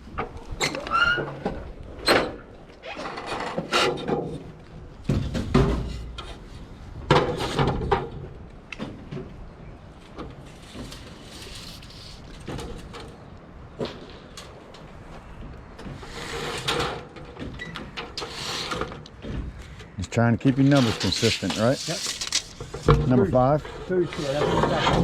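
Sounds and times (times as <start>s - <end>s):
sheet metal clunks and scrapes: 3.0s - 8.2s, 12.4s - 25.0s.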